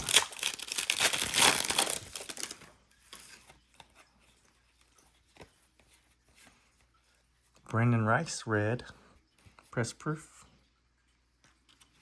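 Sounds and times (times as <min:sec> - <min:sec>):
plastic wrapper crinkling and tearing: 0:00.0 - 0:03.8.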